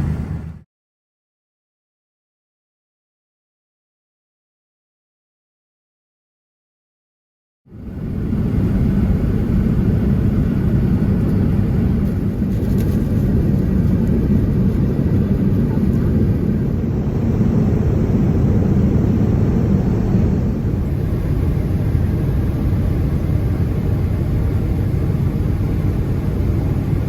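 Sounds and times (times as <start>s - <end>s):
airplane cabin engine roar: 0.0s - 0.6s, 7.7s - 27.0s.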